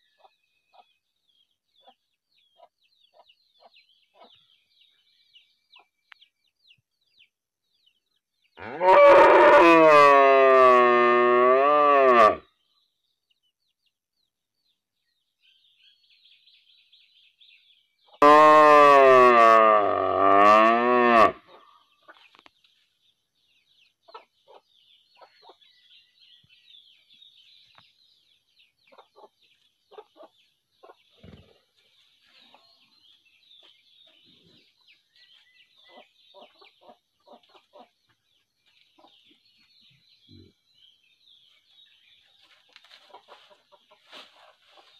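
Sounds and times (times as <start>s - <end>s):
chicken clucking: 1.8s - 4.5s, 24.0s - 25.8s, 28.8s - 40.6s, 42.2s - 44.9s
cow mooing: 8.6s - 12.4s, 18.2s - 21.4s.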